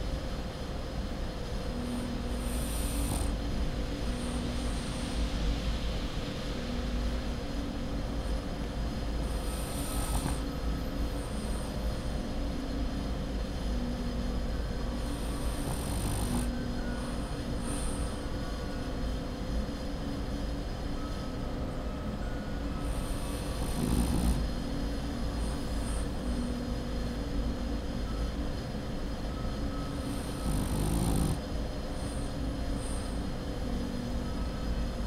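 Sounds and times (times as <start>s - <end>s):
steady low hum: 0.0s - 35.0s
dog snoring: 1.7s - 5.4s, 9.2s - 12.2s, 14.0s - 18.4s, 22.8s - 27.3s, 29.9s - 34.3s.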